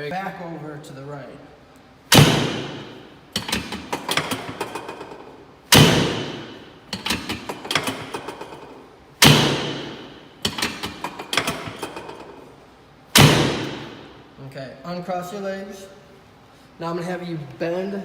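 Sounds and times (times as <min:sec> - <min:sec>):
heavy thuds on treatment table: 0:05.7 - 0:08.1, 0:09.2 - 0:10.1, 0:13.2 - 0:14.0.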